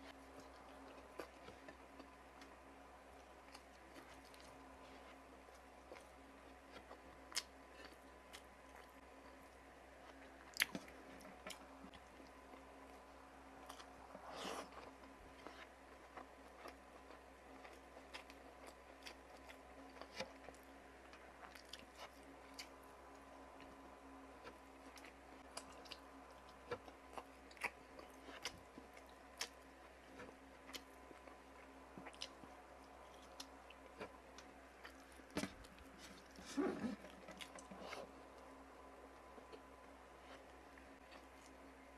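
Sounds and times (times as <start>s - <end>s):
person chewing: 3.2s - 12.7s, 13.6s - 22.8s, 24.4s - 38.5s.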